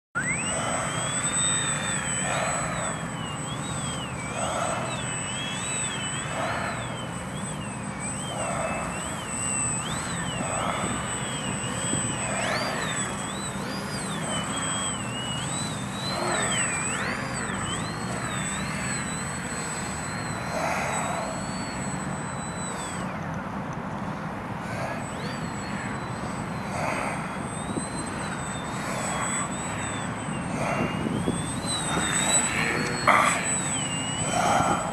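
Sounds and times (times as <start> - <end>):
model plane motor whine: 0.2 - 34.9
wind noise: 30.4 - 34.9.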